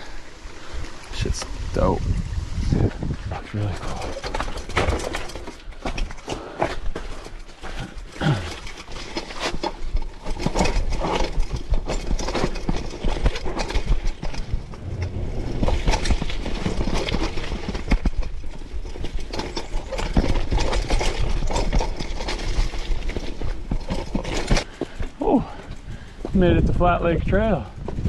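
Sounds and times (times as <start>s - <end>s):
bike rattling over bumps: 0.0s - 28.0s
wind rumble on microphone: 0.6s - 5.0s, 11.4s - 24.6s, 25.3s - 28.0s.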